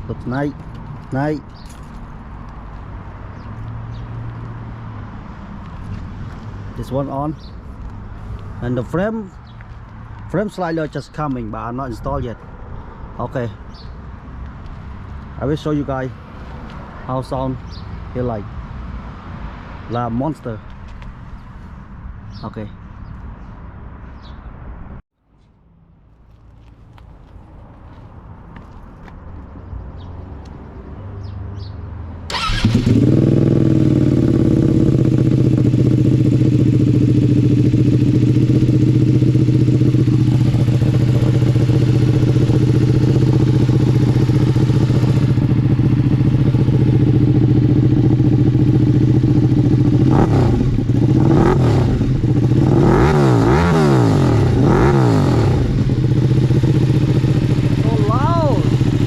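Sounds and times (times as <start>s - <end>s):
motorcycle engine idling: 32.3s - 53.7s, 55.4s - 59.0s.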